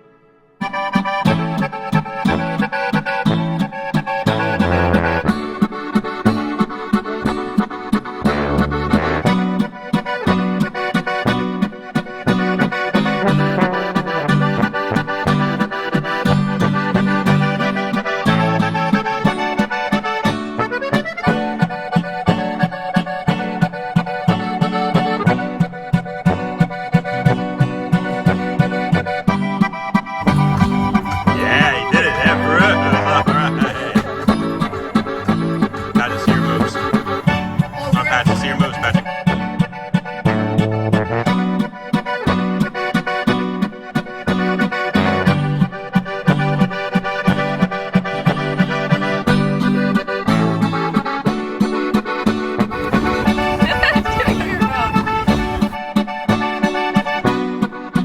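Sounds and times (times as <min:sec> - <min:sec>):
accordion music with quick beat: 0:00.6 - 0:40.2, 0:41.4 - 0:55.8
steady beat: 0:30.2 - 0:39.0.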